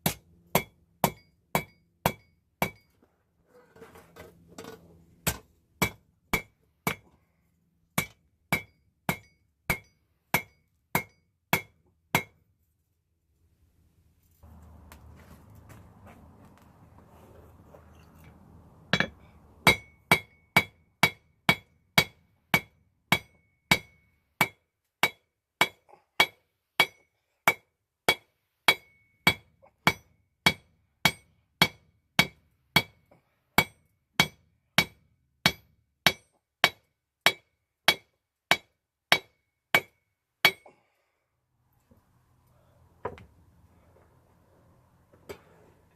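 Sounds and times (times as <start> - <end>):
hammer striking steel on anvil: 0.0 - 2.9, 5.2 - 7.1, 8.0 - 12.4, 18.9 - 33.0, 33.6 - 40.7.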